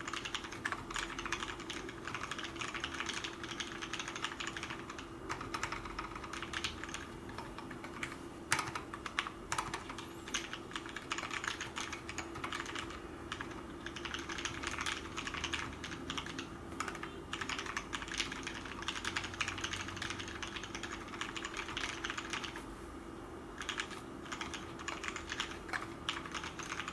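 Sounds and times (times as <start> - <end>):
mechanical keyboard typing: 0.0 - 22.6, 23.6 - 26.9
faint steady hum: 0.0 - 26.9.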